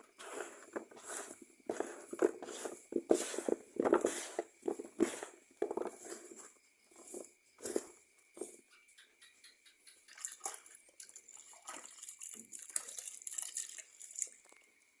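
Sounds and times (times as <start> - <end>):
cow chewing wet feed: 0.0 - 8.5.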